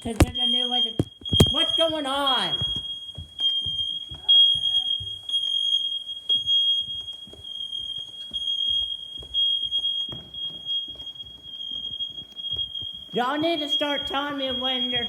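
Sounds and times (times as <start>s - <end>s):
knocks and thumps of handling: 0.0s - 0.4s, 1.0s - 2.0s
smoke alarm high-pitched tone: 0.0s - 15.0s.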